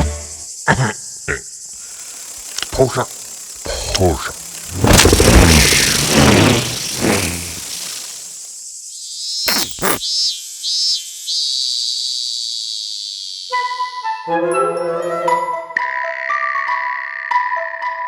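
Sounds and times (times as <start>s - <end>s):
cicada buzzing: 0.0s - 14.3s
rough noise: 1.8s - 8.4s, 9.5s - 10.0s
sharp clicks: 2.3s - 8.2s.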